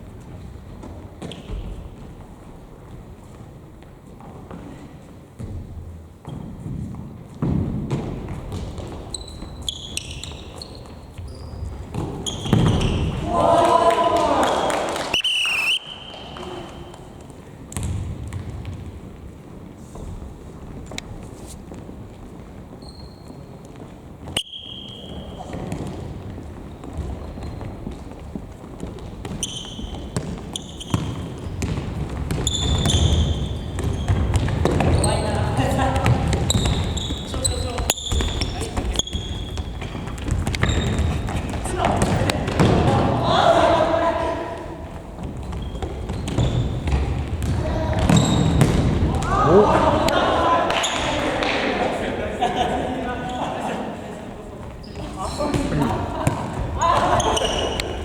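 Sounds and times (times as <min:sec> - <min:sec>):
shoes squeaking on floor: 0:00.1 - 0:13.3, 0:15.1 - 0:43.0, 0:44.4 - 0:51.6, 0:54.5 - 0:58.0
ball kicked and bouncing: 0:05.4 - 0:13.2, 0:17.7 - 0:19.0, 0:25.5 - 0:43.1, 0:45.2 - 0:49.4.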